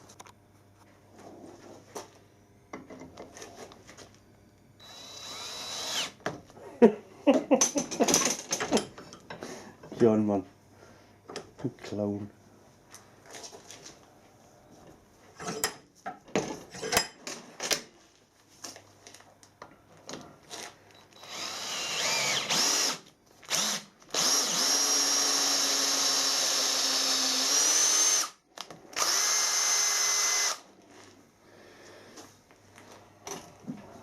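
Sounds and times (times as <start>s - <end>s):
power drill whining: 4.8s - 6.2s, 21.1s - 30.6s.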